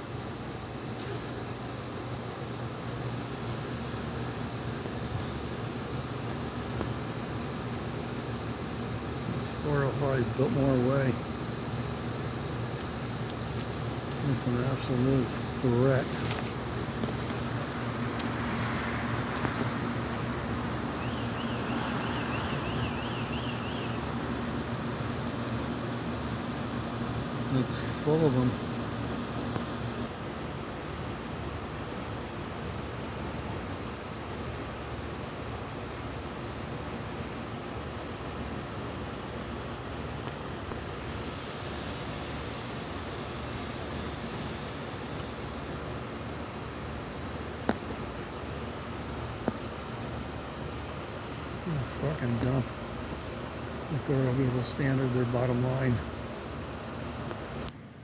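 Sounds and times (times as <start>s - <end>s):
faint high whine: 0.0s - 58.0s
steady mechanical hum: 0.0s - 58.0s
distant engine rumble: 2.7s - 44.6s.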